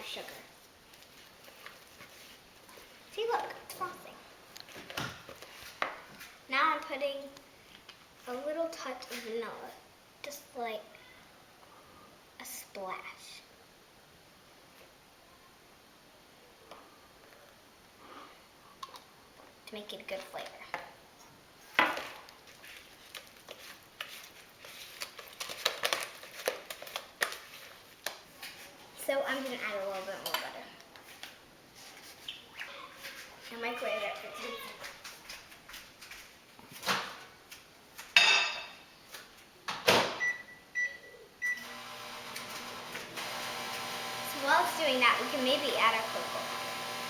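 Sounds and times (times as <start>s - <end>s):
faint clicks and handling noises: 22.0s - 28.7s
spoon stirring frosting: 22.4s - 32.3s
keypad beeps: 40.2s - 41.6s
microwave oven humming: 41.4s - 47.0s.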